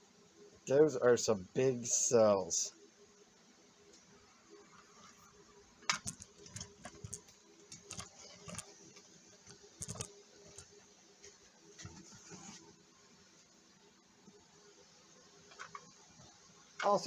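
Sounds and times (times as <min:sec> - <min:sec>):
faint steady hum: 0:00.0 - 0:17.0
objects handled on a workbench: 0:04.9 - 0:10.7, 0:11.8 - 0:12.7.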